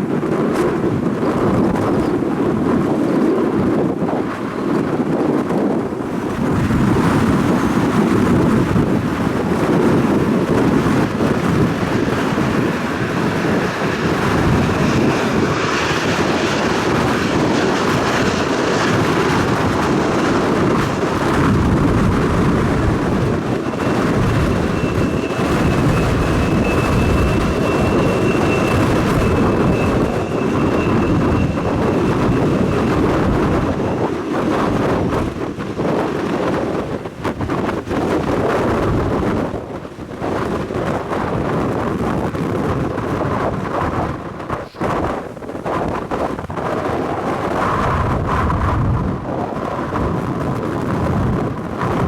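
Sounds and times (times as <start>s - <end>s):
airliner engines running: 0.0s - 52.0s
wind on microphone: 0.0s - 52.0s
thin high whine: 22.6s - 35.6s.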